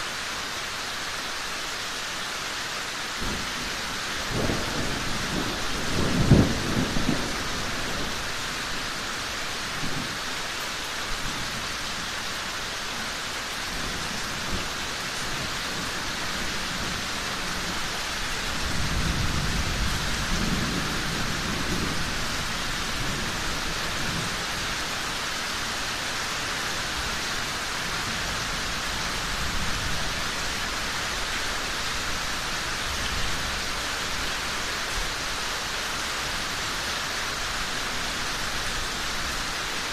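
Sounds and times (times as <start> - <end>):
steady rain falling: 0.0 - 39.9
thunder clap and rumble: 4.2 - 8.1.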